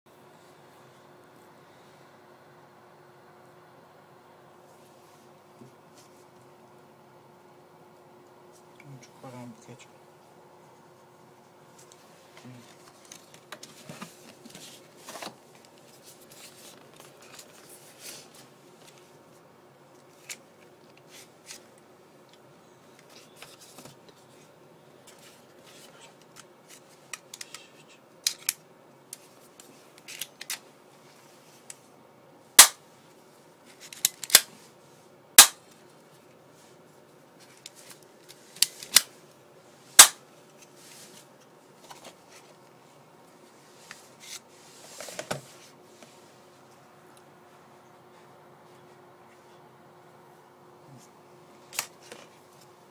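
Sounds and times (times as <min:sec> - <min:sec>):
pistol handling clicks and rattles: 0:33.9 - 0:34.5.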